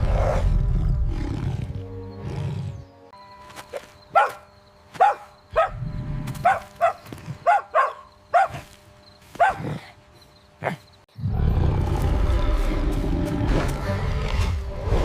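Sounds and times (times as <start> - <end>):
small dog barking: 4.1 - 5.8, 6.4 - 8.7, 9.3 - 9.8.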